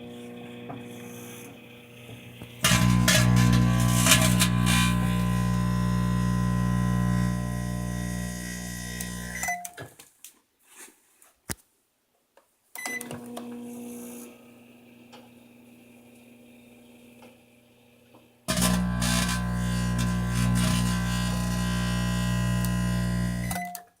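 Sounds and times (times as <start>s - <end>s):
microwave oven humming: 0.0s - 9.5s, 13.0s - 23.6s.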